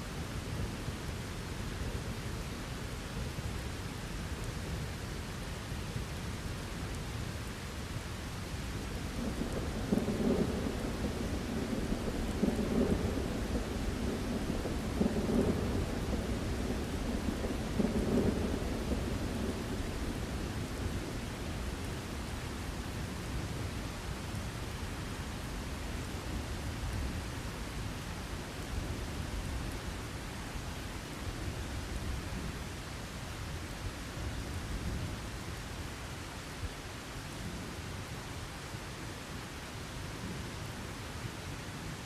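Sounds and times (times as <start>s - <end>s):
steady rain falling: 0.0s - 42.0s
rolling thunder rumble: 9.1s - 22.7s.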